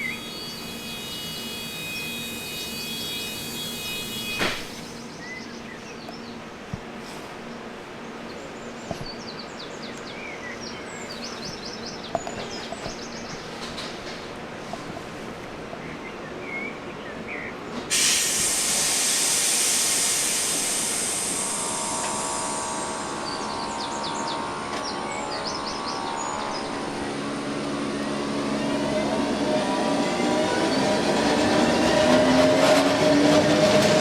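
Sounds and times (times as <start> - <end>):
loud hiss of compressed air: 0.0 - 5.0, 17.9 - 24.4
train traction whine: 0.0 - 34.0.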